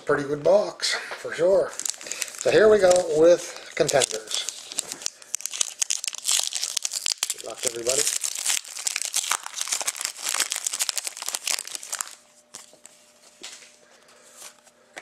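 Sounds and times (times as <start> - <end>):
card pack wrapper tearing: 1.7 - 12.7.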